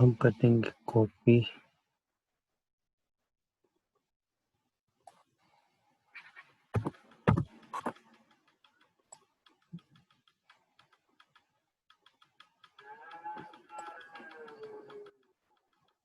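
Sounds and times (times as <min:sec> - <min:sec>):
mouse clicking: 0:06.3 - 0:16.0
keyboard typing: 0:06.8 - 0:16.0.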